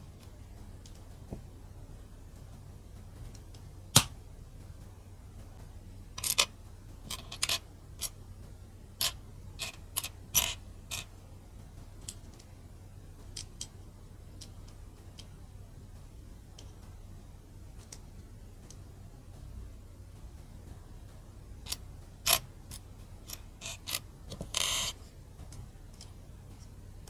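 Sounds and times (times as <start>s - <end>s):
plastic bricks clicking: 21.7s - 25.0s.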